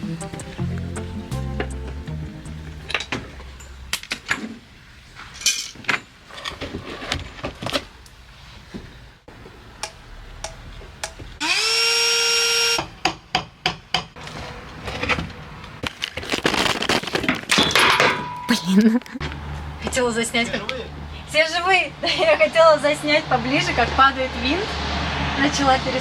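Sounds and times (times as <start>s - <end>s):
power drill running: 11.4s - 12.8s.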